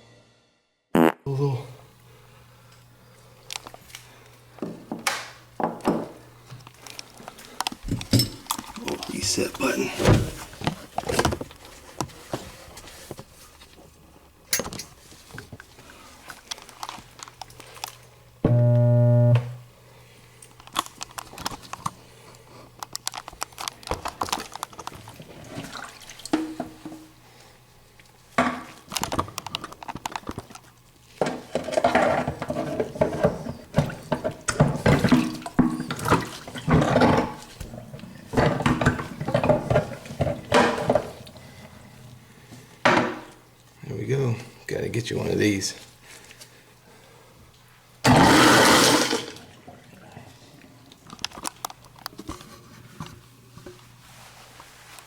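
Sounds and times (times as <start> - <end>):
garbage disposal motor humming: 18.4 - 19.7.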